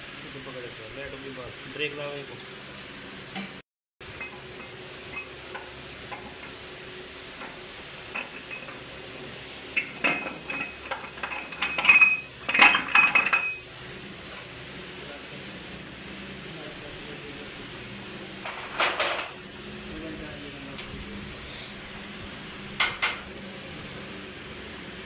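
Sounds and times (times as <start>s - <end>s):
metal tools clinking and clattering: 9.8s - 13.6s, 18.4s - 19.3s.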